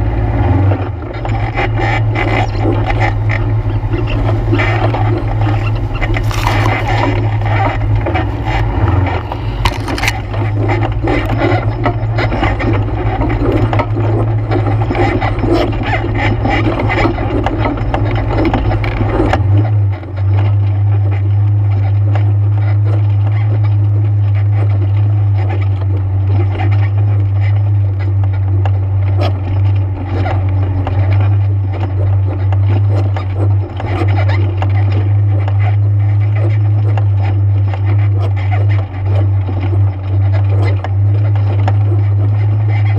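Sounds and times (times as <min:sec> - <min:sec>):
atv engine running: 0:00.0 - 0:42.9.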